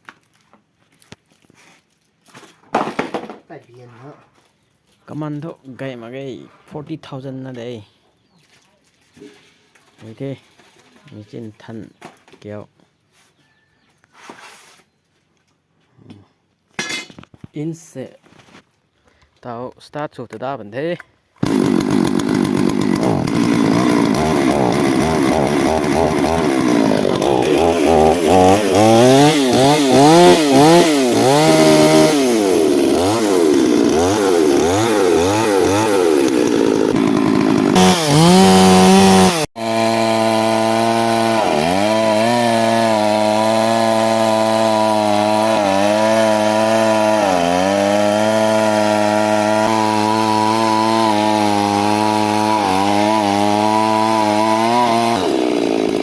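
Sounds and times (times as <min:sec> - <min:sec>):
chainsaw revving and idling: 0:21.4 - 0:56.0.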